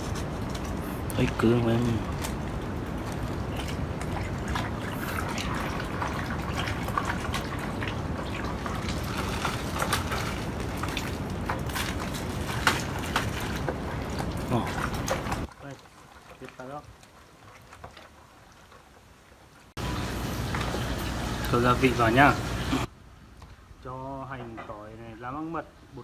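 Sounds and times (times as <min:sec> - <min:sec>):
wet squelching: 0:00.0 - 0:15.5
steady background hiss: 0:19.8 - 0:26.0.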